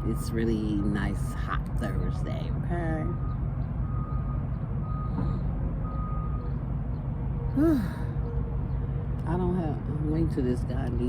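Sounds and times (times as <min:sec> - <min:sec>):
vehicle reversing alarm beeping: 0:00.0 - 0:06.7
person humming: 0:07.6 - 0:08.1.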